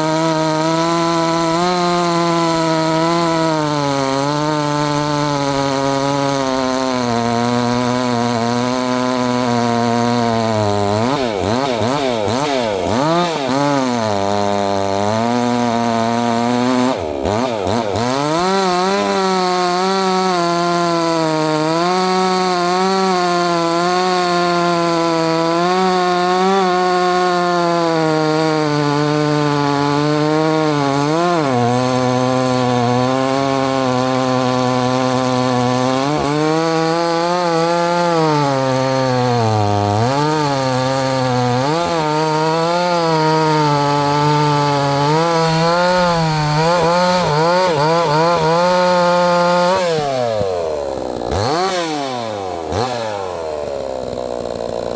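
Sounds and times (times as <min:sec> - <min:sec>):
chainsaw cutting wood: 0:00.0 - 0:54.9.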